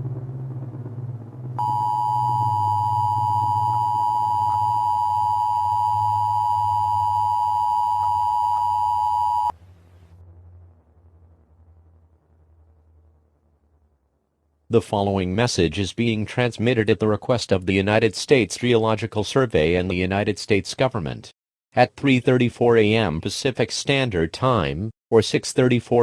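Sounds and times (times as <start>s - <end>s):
low steady hum: 0.0s - 14.2s.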